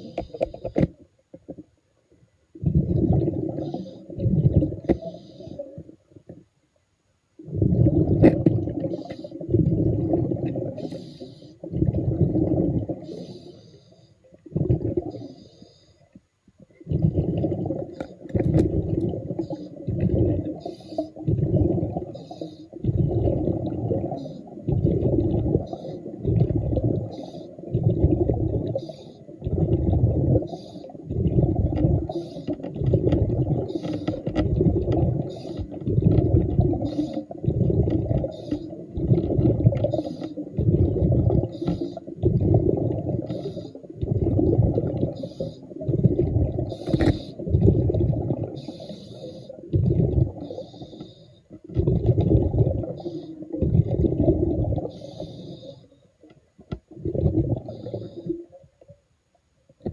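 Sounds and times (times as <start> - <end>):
underwater exhaled bubbles rumbling: 2.6 - 5.9, 7.4 - 13.2, 14.4 - 15.4, 16.8 - 55.6, 56.6 - 58.6
hissing breaths: 43.3 - 43.9, 48.6 - 49.6, 50.4 - 51.5, 54.9 - 56.0.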